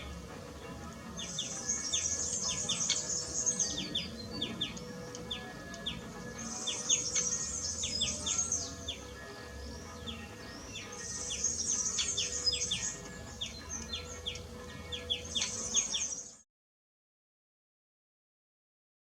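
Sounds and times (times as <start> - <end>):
birds chirping: 0.0 - 16.4
high bird trilling: 1.2 - 16.4.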